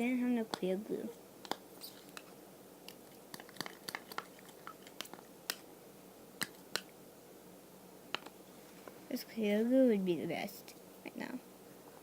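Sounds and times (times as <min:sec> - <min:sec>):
slime being stirred: 0:01.5 - 0:05.7
sticky clicks and squelches: 0:02.9 - 0:05.6.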